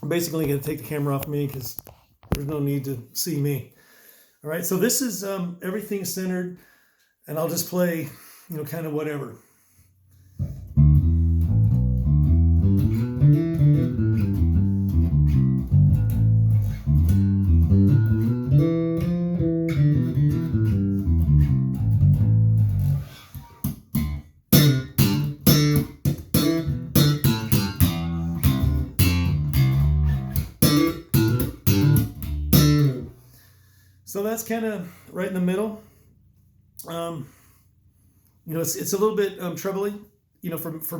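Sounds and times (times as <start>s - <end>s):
electric bass notes: 10.4s - 33.8s.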